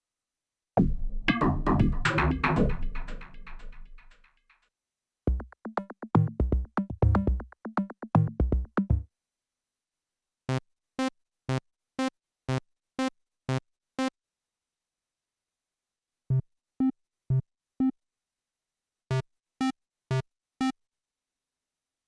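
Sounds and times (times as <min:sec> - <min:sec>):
punchy synthesizer bass notes: 0:00.8 - 0:04.0.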